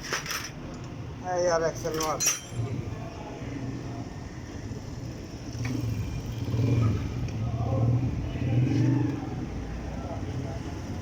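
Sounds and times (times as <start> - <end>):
motorcycle engine revving: 5.4 - 9.8.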